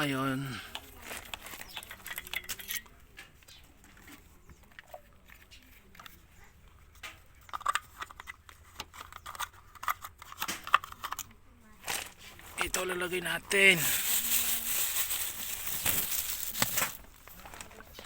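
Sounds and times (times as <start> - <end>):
clicks and taps of objects handled: 0.7 - 11.4.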